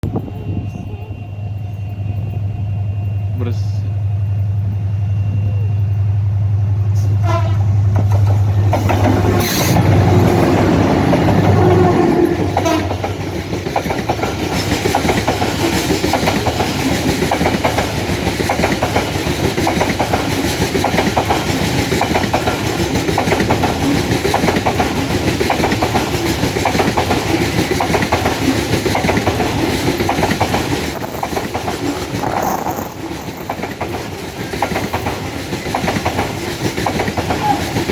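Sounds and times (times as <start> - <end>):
diesel locomotive drone: 0.0 - 37.9
train wheels clattering over rail joints: 7.2 - 37.9.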